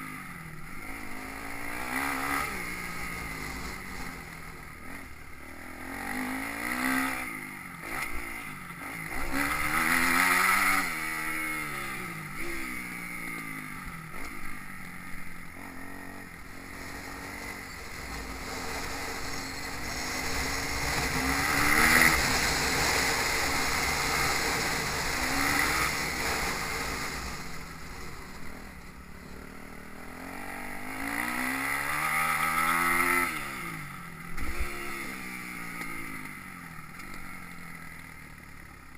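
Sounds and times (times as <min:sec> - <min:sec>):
motocross bike engine revving: 0:00.0 - 0:38.9.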